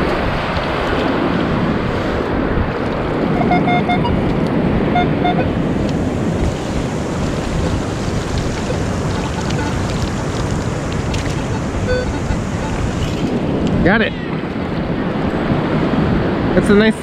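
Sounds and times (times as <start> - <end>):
ocean surf: 0.0 - 17.0
wind buffeting microphone: 0.0 - 17.0
metal detector beeps: 3.3 - 6.6, 8.6 - 10.0, 11.2 - 13.3.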